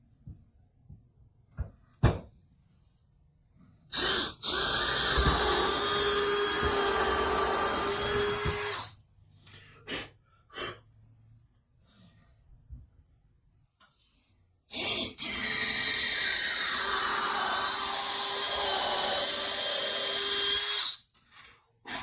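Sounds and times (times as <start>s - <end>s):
power drill boring into wood: 4.0s - 8.9s, 15.2s - 21.0s.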